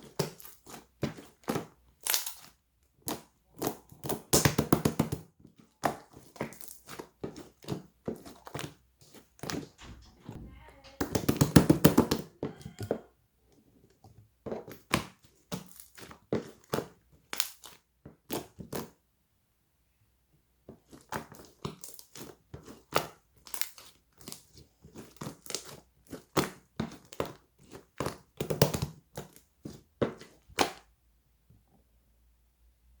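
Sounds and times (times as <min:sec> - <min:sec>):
slime popping and crackling: 0:00.0 - 0:09.6, 0:14.6 - 0:19.0, 0:20.9 - 0:30.9.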